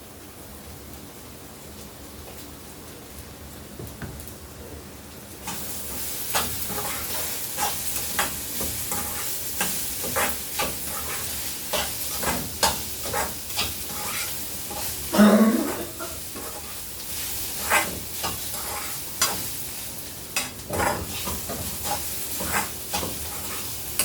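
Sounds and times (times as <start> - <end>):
coconut sizzling in oil: 5.2 - 24.0
spoon stirring and scraping pan: 5.4 - 24.0.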